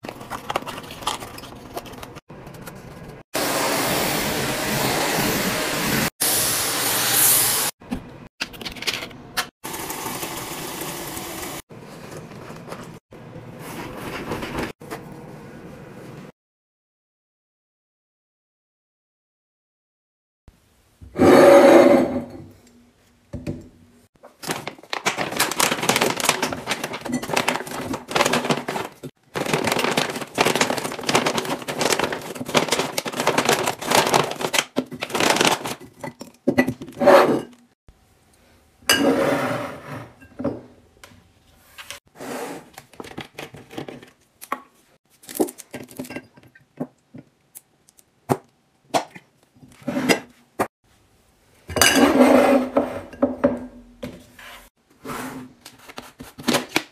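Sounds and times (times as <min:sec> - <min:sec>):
packaging rustling and crinkling: 0:24.2 - 0:35.9
items being set down: 0:24.2 - 0:37.5.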